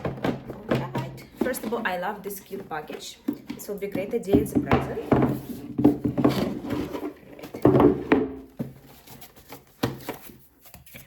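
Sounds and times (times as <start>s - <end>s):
cardboard box knocks and scrapes: 4.2s - 10.5s.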